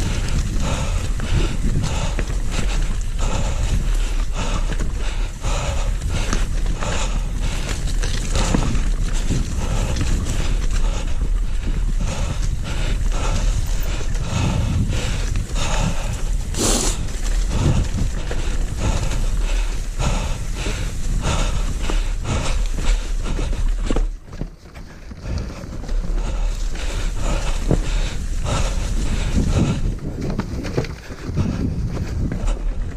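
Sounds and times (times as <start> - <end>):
wind buffeting microphone: 0.0 - 24.3, 24.9 - 32.9
bike clattering over rocks: 30.0 - 32.0.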